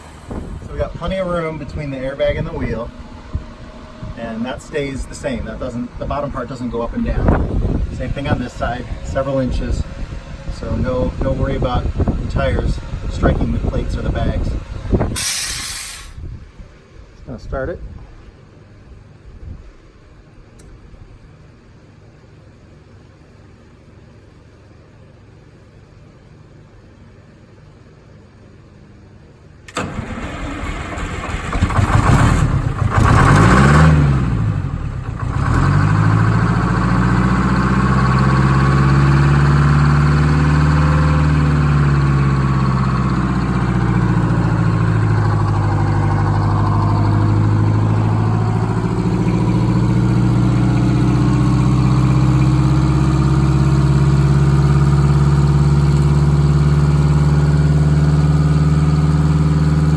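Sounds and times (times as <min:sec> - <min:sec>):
diesel engine cranking and starting: 0:00.0 - 0:16.2, 0:29.7 - 0:59.9
diesel engine idling: 0:00.0 - 0:16.2, 0:29.7 - 0:59.9
diesel engine revving: 0:00.0 - 0:16.2, 0:29.7 - 0:59.9.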